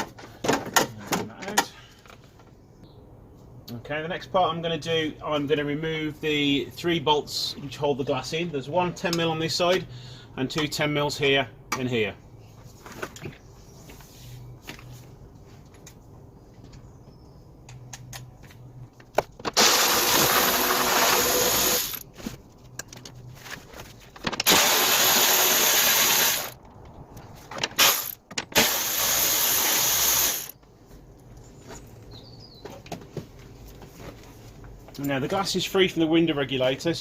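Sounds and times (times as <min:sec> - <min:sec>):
power tool running: 0:19.5 - 0:22.0, 0:24.4 - 0:26.6, 0:27.7 - 0:30.6.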